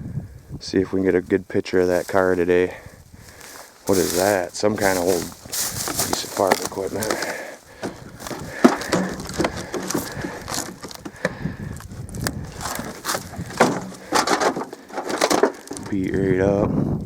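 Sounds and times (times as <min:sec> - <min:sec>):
wooden boards knocking and snapping: 0:05.5 - 0:11.4, 0:12.2 - 0:16.0.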